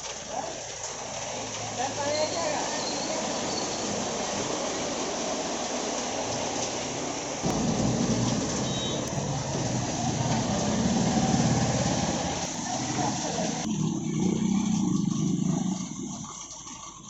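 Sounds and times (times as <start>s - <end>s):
heavy rain hiss: 0.0s - 13.7s
vehicle engine droning: 7.4s - 16.3s.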